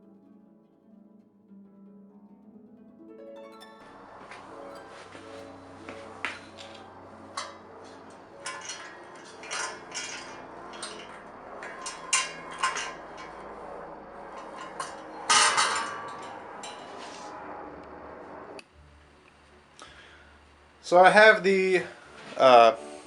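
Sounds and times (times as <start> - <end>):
steel pieces clanking: 4.4 - 17.2.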